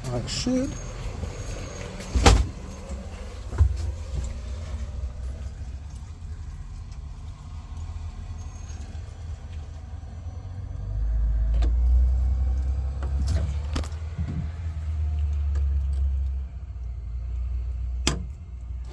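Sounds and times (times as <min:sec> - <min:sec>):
loud thump: 0:02.1 - 0:02.6.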